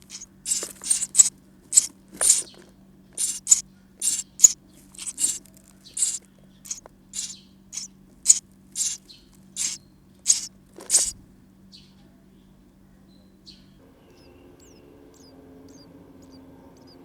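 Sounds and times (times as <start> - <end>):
nestlings making hissy calls: 0.0 - 2.6, 3.2 - 11.2, 14.6 - 16.9.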